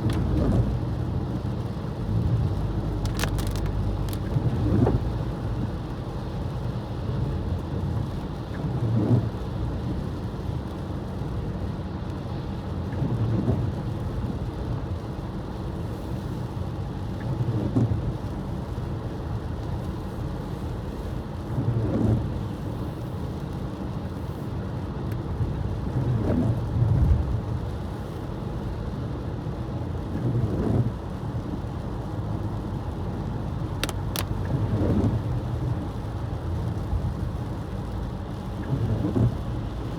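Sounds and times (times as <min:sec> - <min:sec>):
tyre and engine rumble: 0:00.0 - 0:05.4, 0:30.0 - 0:39.9.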